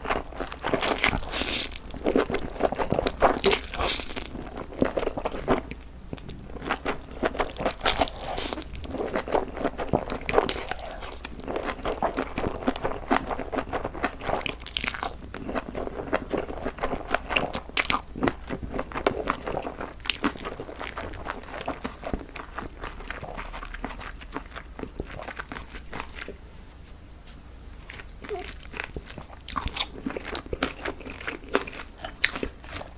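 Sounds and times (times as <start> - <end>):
person chewing crunchy food: 0.0 - 32.9.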